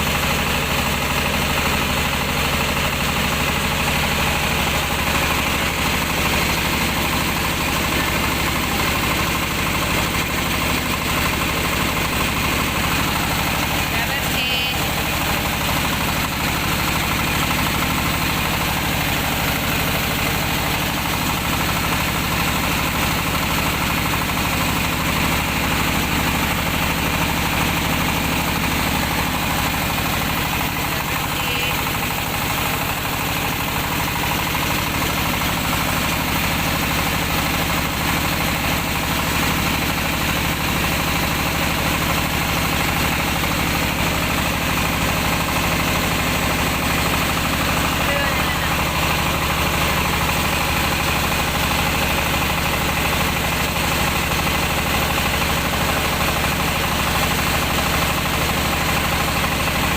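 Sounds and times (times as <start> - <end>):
rice mill machinery running: 0.0 - 59.9.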